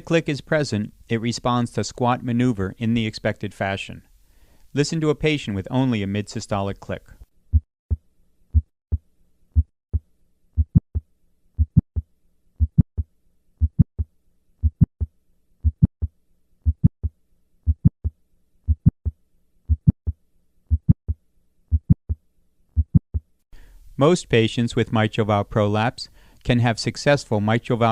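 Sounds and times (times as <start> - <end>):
heartbeat: 7.5 - 9.0, 9.6 - 22.2, 22.8 - 23.3.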